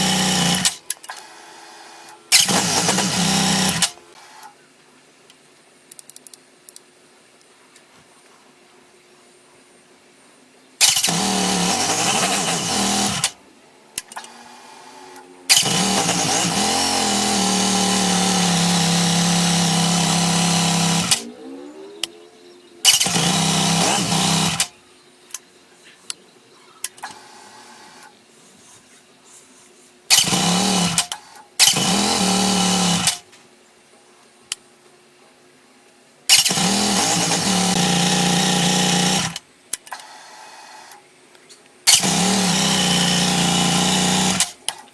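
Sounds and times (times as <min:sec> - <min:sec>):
motorcycle engine starting: 0:00.0 - 0:00.9, 0:02.3 - 0:04.0, 0:10.8 - 0:13.4, 0:15.0 - 0:24.8, 0:30.1 - 0:33.3, 0:36.3 - 0:39.4, 0:41.9 - 0:44.7.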